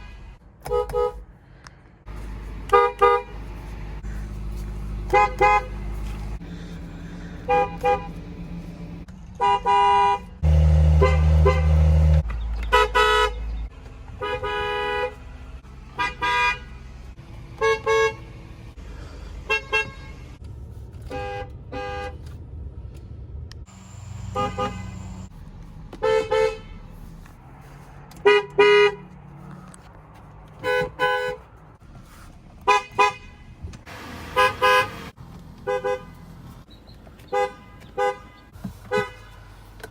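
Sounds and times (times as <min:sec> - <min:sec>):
car horns honking: 0:00.6 - 0:01.2, 0:02.2 - 0:06.7, 0:07.4 - 0:08.4, 0:09.4 - 0:18.5, 0:19.4 - 0:20.4, 0:21.1 - 0:22.3, 0:23.7 - 0:25.3, 0:26.0 - 0:27.0, 0:28.2 - 0:29.2, 0:30.6 - 0:31.5, 0:32.6 - 0:36.3, 0:37.2 - 0:39.4.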